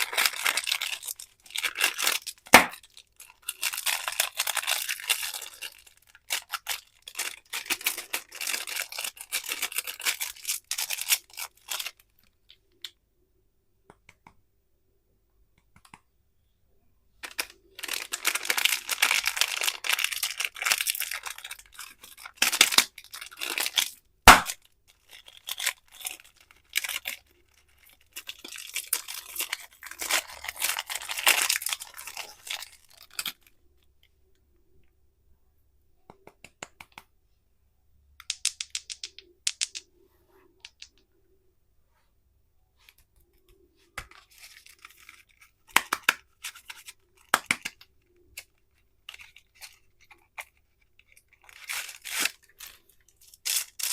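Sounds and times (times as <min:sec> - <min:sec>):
candy wrappers crinkling: 0:00.0 - 0:12.8, 0:17.2 - 0:34.1, 0:38.2 - 0:39.8, 0:43.0 - 0:53.9
sharp snap: 0:24.3 - 0:24.6.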